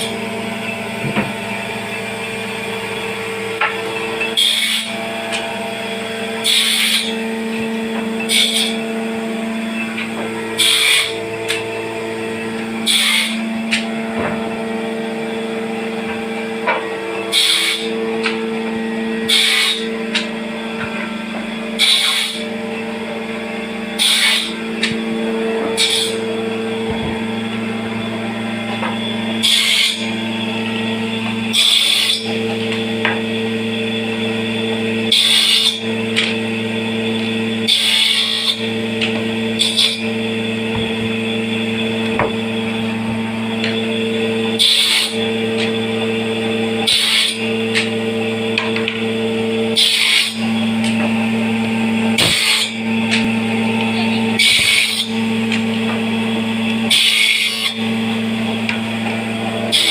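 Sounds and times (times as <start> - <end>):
power tool running: 0.0 - 59.9
hissing rasp of wood cuts: 4.4 - 5.0, 6.4 - 7.3, 8.3 - 8.8, 10.6 - 11.2, 12.8 - 13.4, 17.3 - 18.0, 19.2 - 20.0, 21.8 - 22.5, 24.0 - 24.7, 25.8 - 26.3, 29.4 - 30.1, 31.5 - 32.3, 35.1 - 35.8, 37.6 - 38.6, 39.5 - 40.1, 44.6 - 45.3, 46.8 - 47.4, 49.8 - 50.6, 52.2 - 52.8, 54.0 - 55.2, 56.9 - 57.9.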